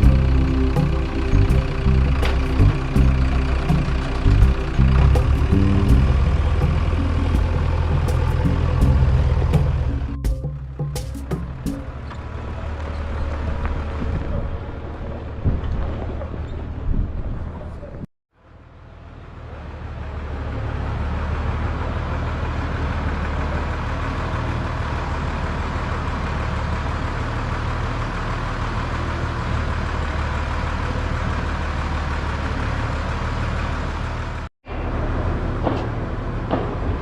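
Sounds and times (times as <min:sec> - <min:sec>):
machine engine droning: 0:00.0 - 0:16.8.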